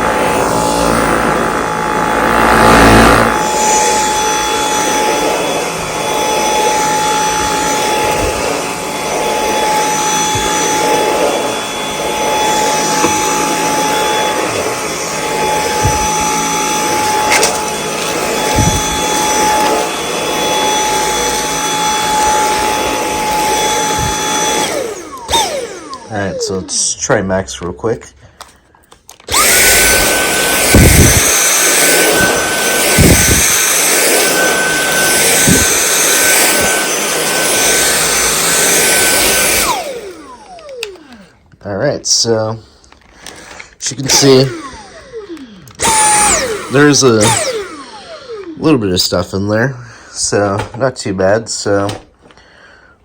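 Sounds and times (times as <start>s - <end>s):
vacuum cleaner whining: 0.0s - 53.0s
vacuum head knocking: 0.1s - 26.1s.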